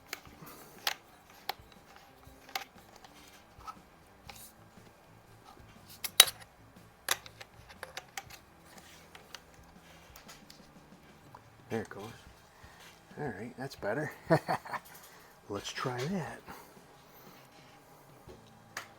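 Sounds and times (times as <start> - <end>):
metal parts clicking and clinking: 0.0 - 13.1.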